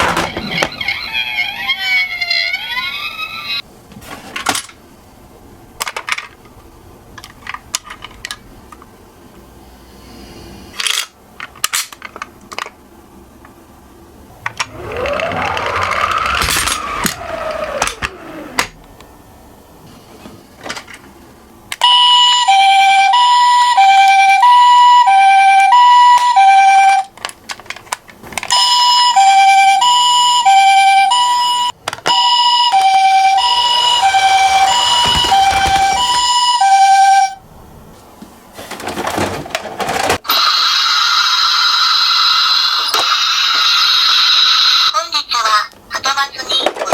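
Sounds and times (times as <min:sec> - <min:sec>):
toy ambulance two-tone siren: 0:21.8 - 0:27.1, 0:28.5 - 0:37.4, 0:40.3 - 0:45.0
rising and falling pitch sound: 0:32.7 - 0:37.2.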